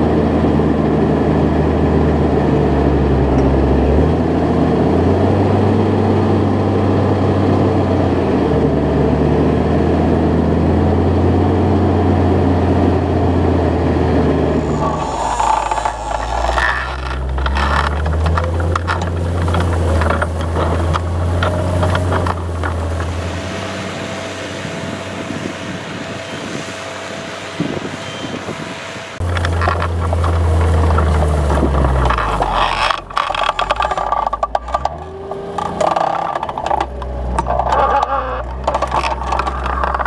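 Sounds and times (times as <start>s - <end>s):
tractor engine drone: 0.0s - 40.0s
plough scraping and rattling: 14.1s - 28.4s, 29.2s - 40.0s.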